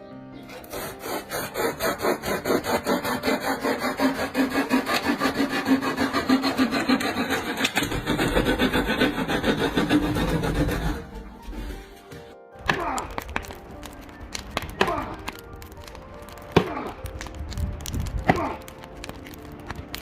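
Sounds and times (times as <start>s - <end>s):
hand saw cutting wood: 0.5s - 12.8s.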